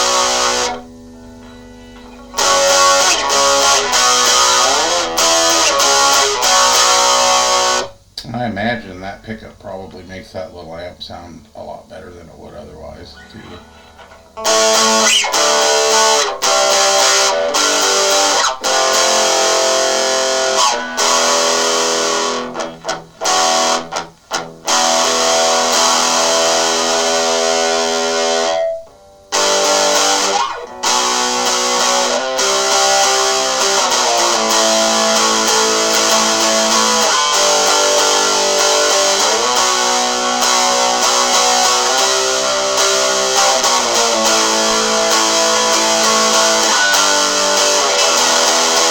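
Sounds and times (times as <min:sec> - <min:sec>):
distorted electric guitar chords: 0:00.0 - 0:08.9, 0:12.9 - 0:48.9.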